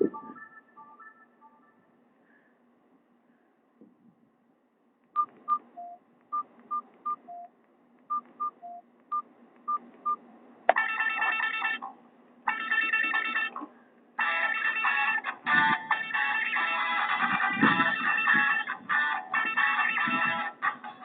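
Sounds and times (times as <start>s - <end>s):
ringtone through phone loudspeaker: 0.0s - 1.9s, 10.7s - 11.9s, 12.5s - 13.6s, 14.2s - 21.0s.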